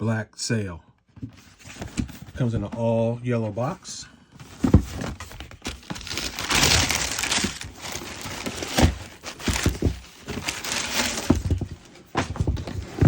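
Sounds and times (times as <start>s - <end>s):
paper crinkling and rustling: 4.4s - 13.0s
cardboard knocks: 6.8s - 13.0s.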